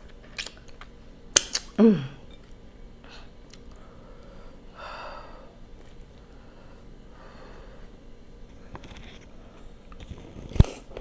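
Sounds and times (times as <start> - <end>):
mouth clicks and smacks: 0.0 - 2.6
person humming mm: 1.7 - 2.3
soft breath: 3.0 - 5.6, 6.2 - 9.8.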